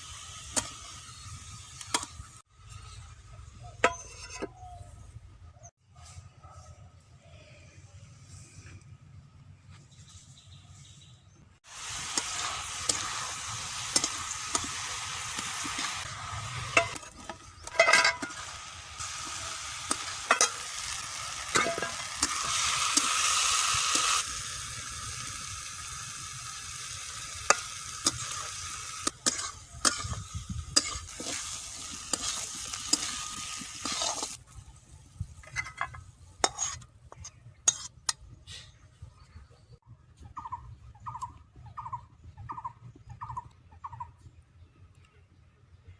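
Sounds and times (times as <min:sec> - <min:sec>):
cabbage sizzling in a pan: 0:00.0 - 0:02.9, 0:11.6 - 0:34.6
utensil scraping a pan: 0:03.8 - 0:04.6, 0:13.9 - 0:24.2, 0:27.4 - 0:34.4, 0:35.4 - 0:38.2.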